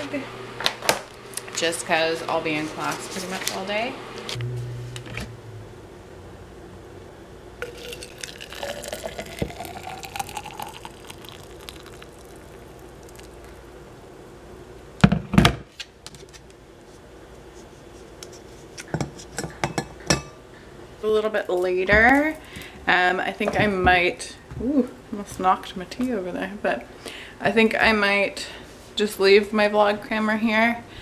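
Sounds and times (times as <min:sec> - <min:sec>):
water poured into a mug: 0:07.6 - 0:13.7.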